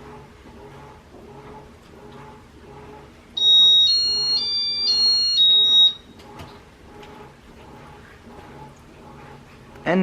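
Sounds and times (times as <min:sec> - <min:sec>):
faint rhythmic hum: 0:00.0 - 0:10.0
appliance chime beeping tune: 0:03.4 - 0:06.1.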